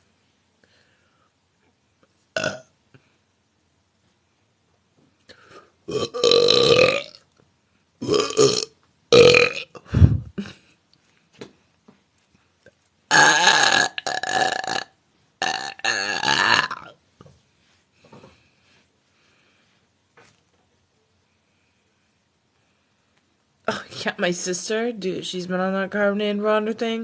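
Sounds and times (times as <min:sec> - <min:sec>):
woman belching: 0:02.4 - 0:02.6, 0:05.9 - 0:07.2, 0:08.0 - 0:09.9, 0:13.1 - 0:17.0.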